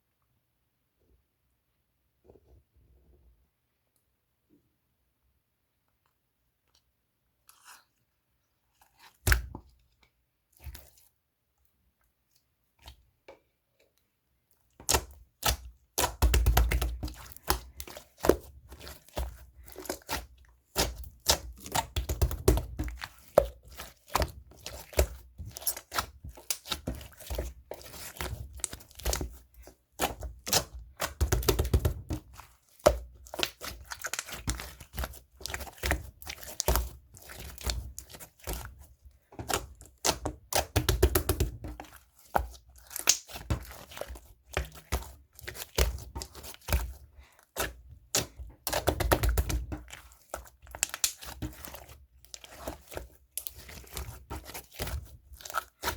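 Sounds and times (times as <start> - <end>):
slime squished by hand: 14.7 - 55.9.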